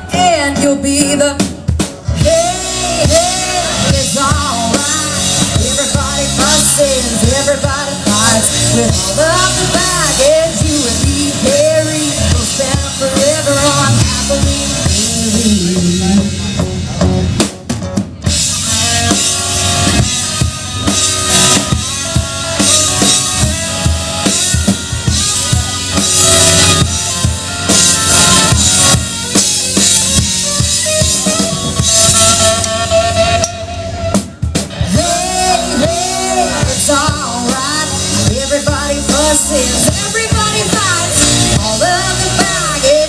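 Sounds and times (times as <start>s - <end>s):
drum kit beat: 0.0s - 43.0s
live country band playing: 0.0s - 43.0s
melodic lead line: 0.0s - 43.0s
person singing: 2.1s - 17.0s, 34.8s - 43.0s.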